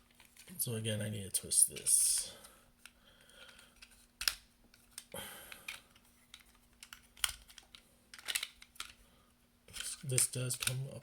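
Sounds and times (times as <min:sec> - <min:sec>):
plastic toy parts clicking: 0:05.7 - 0:09.0, 0:09.8 - 0:11.0.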